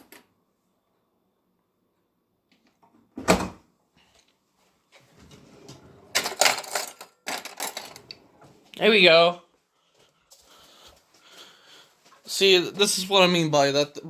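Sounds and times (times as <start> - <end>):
cutlery rattling in drawer: 5.3 - 8.3.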